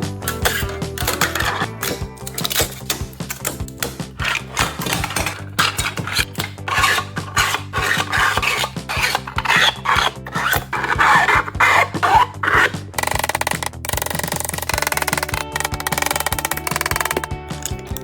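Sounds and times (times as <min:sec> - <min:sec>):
background music with steady beat: 0:00.0 - 0:18.0
rasping scraping strokes: 0:00.2 - 0:17.2.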